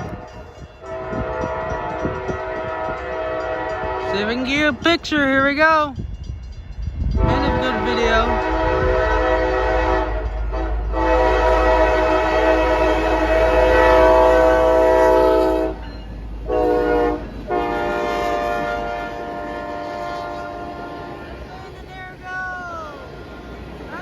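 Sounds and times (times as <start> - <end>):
locomotive air horn blasts: 0.0 - 4.7, 7.1 - 21.4
passing train rumble: 0.0 - 24.0.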